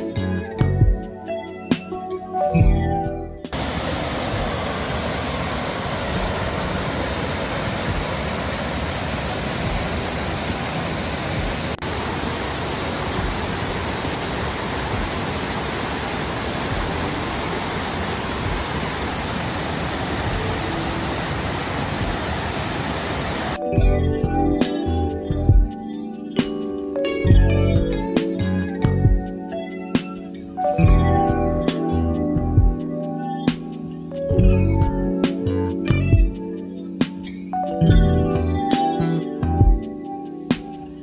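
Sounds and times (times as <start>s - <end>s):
waterfall rushing: 3.5s - 23.6s.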